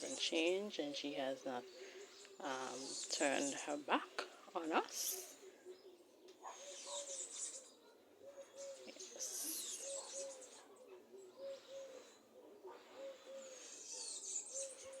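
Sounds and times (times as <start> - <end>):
low cooing calls: 0.0 - 15.0
bird chirps and twitters: 4.7 - 12.0, 13.5 - 15.0.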